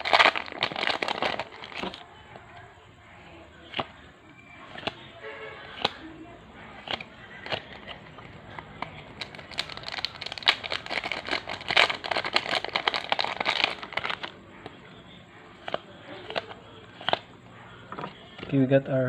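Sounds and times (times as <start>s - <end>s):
wrapper crinkling and tearing: 0.0s - 2.0s, 8.8s - 14.4s.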